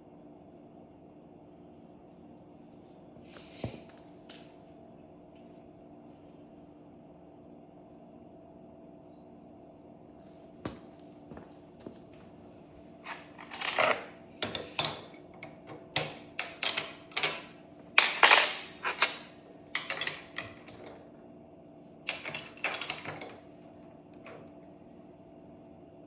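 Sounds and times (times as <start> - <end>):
metal tools clanking and rattling: 13.0 - 21.0, 22.1 - 23.4.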